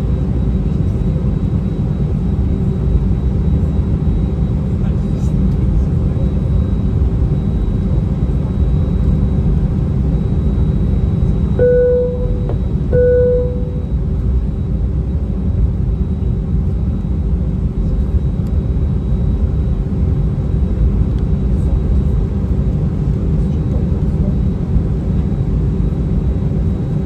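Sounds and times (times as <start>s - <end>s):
airplane cabin engine rumble: 0.0s - 27.0s
faint hum: 11.2s - 14.0s
cabin chime: 11.6s - 13.8s.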